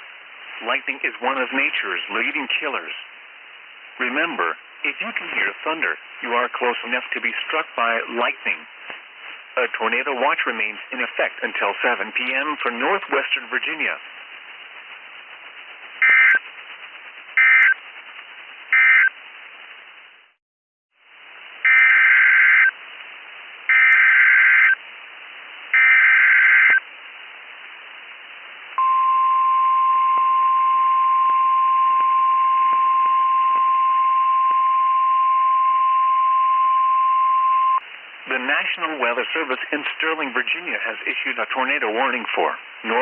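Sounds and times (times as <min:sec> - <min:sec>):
radio hiss: 0:00.0 - 0:20.4, 0:21.0 - 0:43.0
data tone bursts: 0:16.0 - 0:16.4, 0:28.8 - 0:37.8
steady warning alarm tone: 0:21.7 - 0:22.7, 0:23.7 - 0:24.8, 0:25.8 - 0:26.8.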